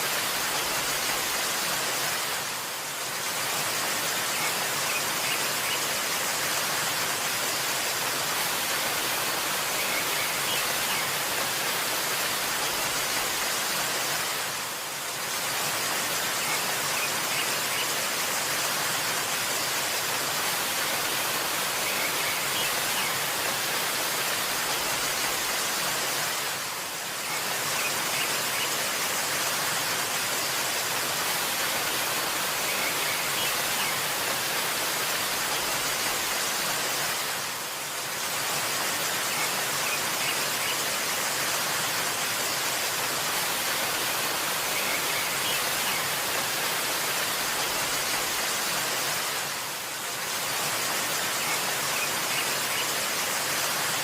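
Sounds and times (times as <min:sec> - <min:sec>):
waterfall rushing: 0:00.0 - 0:54.0
faint bird chirps: 0:44.6 - 0:46.2.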